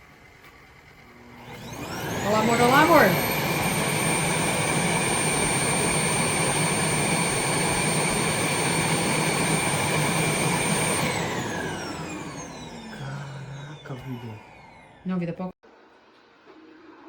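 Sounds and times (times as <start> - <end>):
vacuum suction motor whining: 0.0 - 15.6.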